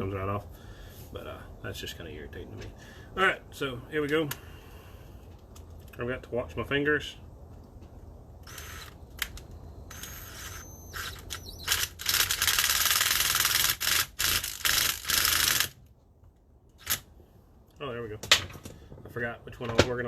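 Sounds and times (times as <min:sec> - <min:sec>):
hydraulic crimper rasping: 0:08.4 - 0:15.8, 0:16.7 - 0:17.1.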